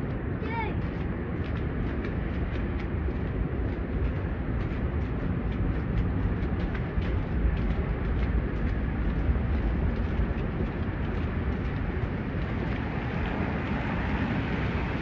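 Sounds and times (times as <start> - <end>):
traffic rumble: 0.0 - 15.0
wind: 0.0 - 15.0.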